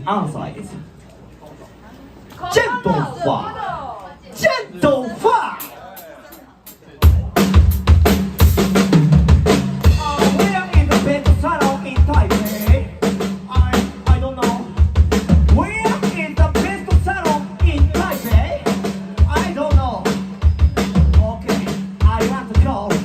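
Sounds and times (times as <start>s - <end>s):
band playing live: 5.5s - 23.0s
drum kit beat: 5.5s - 23.0s.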